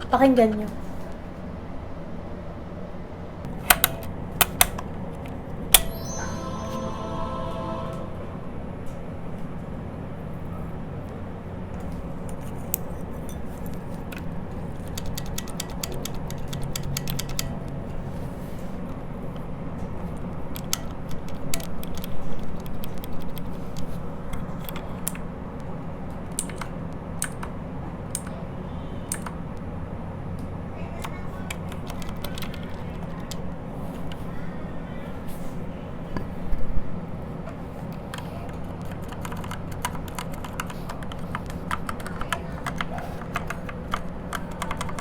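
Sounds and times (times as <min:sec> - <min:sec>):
mechanical keyboard typing: 0:03.5 - 0:04.9, 0:13.9 - 0:17.7, 0:20.4 - 0:28.4, 0:29.1 - 0:29.4, 0:31.0 - 0:34.2, 0:38.0 - 0:45.0.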